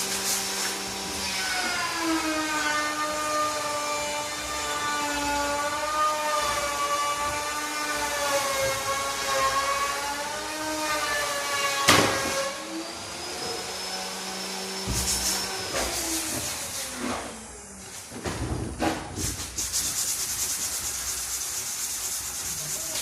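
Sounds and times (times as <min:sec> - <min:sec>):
hiss: 0:00.0 - 0:01.0, 0:14.8 - 0:23.0.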